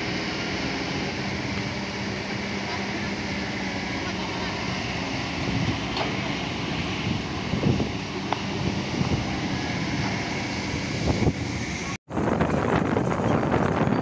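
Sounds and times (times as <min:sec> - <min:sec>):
heavy diesel machinery running: 0:00.0 - 0:14.0
wind noise on microphone: 0:05.2 - 0:14.0.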